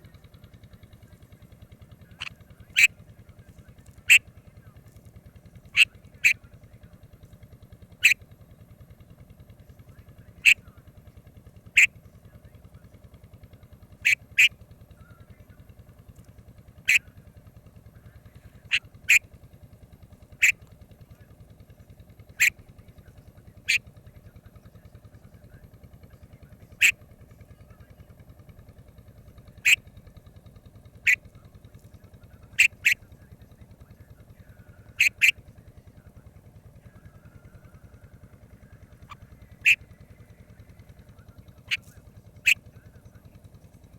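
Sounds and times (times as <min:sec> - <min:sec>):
steady low hum: 0:00.0 - 0:43.9
bird sharp call notes: 0:02.2 - 0:02.9, 0:34.9 - 0:35.4, 0:39.0 - 0:39.8.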